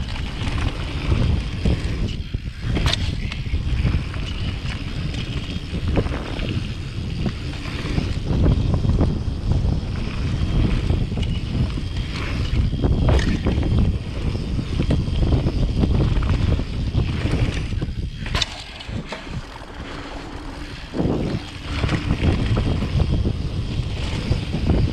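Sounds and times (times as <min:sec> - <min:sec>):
bike knocking on bumps: 0:00.0 - 0:09.1, 0:14.8 - 0:23.3
bike rattling: 0:00.0 - 0:24.9
wind rushing over microphone: 0:00.0 - 0:24.9.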